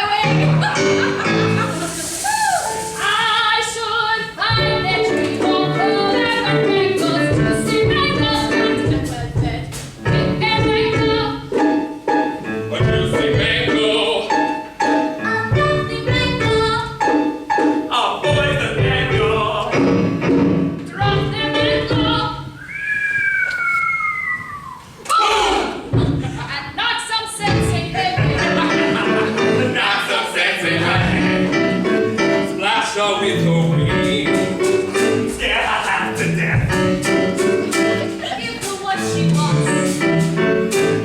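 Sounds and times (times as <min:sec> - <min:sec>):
instrumental accompaniment: 0:04.4 - 0:22.6, 0:27.4 - 0:41.0
voices singing: 0:20.9 - 0:39.9.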